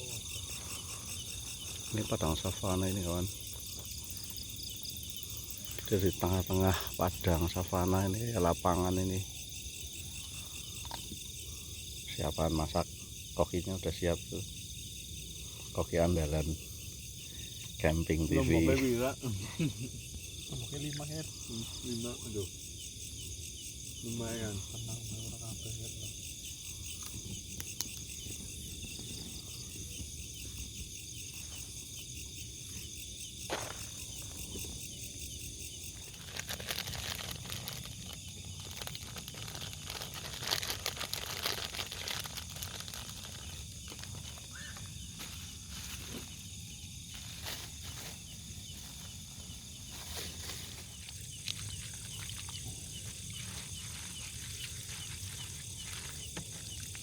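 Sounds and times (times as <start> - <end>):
crickets and insects trilling: 0.0 - 57.0
crackling handling noises: 35.8 - 46.3.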